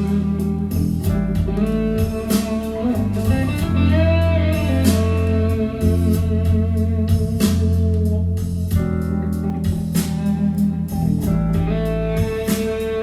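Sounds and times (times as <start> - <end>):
blues-rock music: 0.0 - 13.0.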